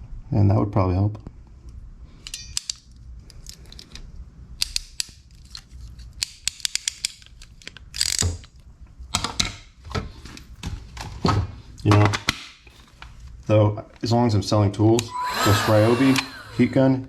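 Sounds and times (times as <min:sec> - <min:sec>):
wiring tool clicks and snips: 0:04.6 - 0:08.5.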